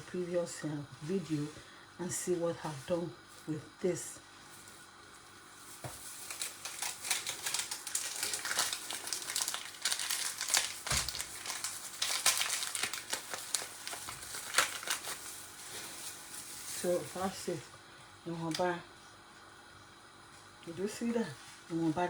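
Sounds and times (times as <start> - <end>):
plastic packaging crinkling: 4.5 - 17.5.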